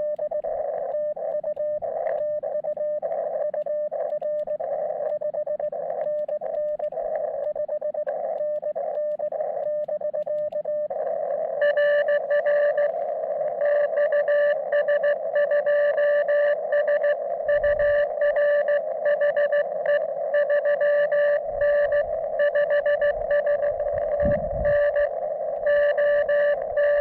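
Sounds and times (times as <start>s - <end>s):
morse code tone: 0.0s - 27.0s
radio band hiss: 10.9s - 27.0s.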